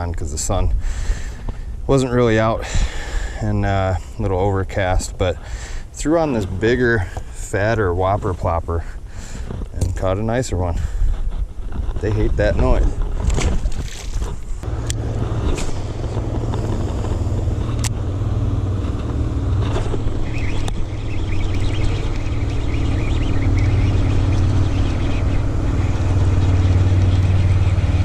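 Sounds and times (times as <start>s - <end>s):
boat motor running: 11.4s - 28.0s
sharp clicks: 13.2s - 18.0s.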